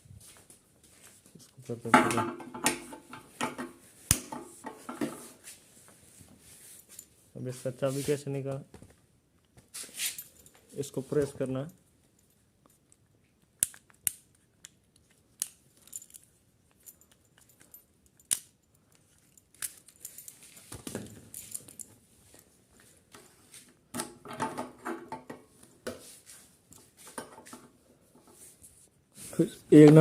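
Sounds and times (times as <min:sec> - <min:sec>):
small metal parts scraping and rattling: 0:15.4 - 0:22.0.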